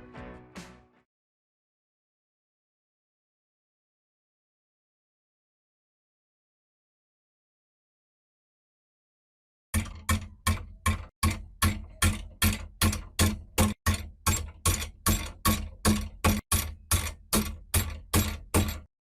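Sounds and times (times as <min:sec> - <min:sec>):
hammer striking with ring: 0:09.8 - 0:18.9.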